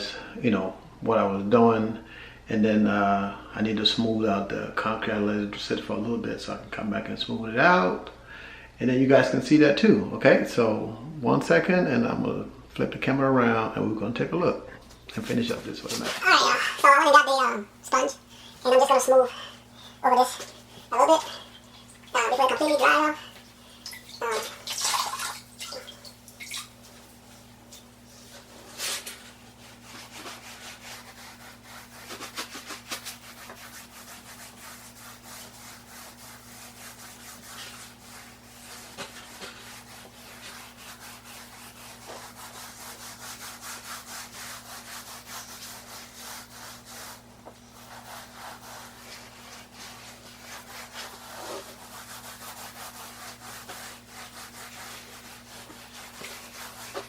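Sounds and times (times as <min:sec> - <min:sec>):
sponge rubbing over mortar: 0:15.2 - 0:25.9, 0:26.7 - 0:57.0.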